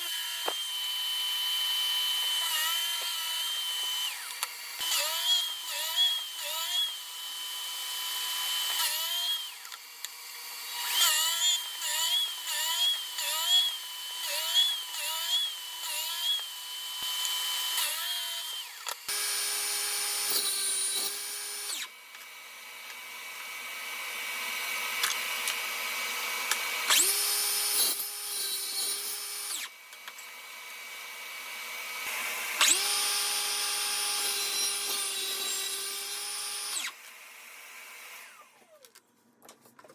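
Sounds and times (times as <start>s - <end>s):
power tool motor under load: 24.5s - 38.9s.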